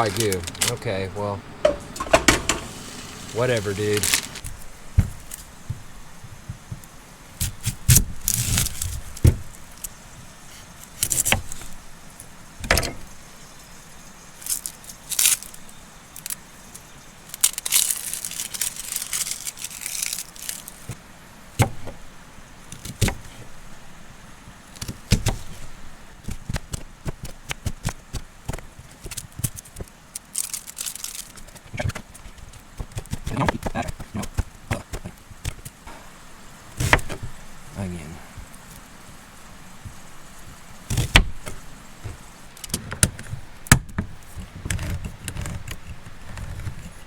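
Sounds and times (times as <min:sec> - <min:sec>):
rustling: 0:00.0 - 0:12.3, 0:14.4 - 0:21.0, 0:28.1 - 0:43.6
cookware clinking and rattling: 0:01.6 - 0:04.4.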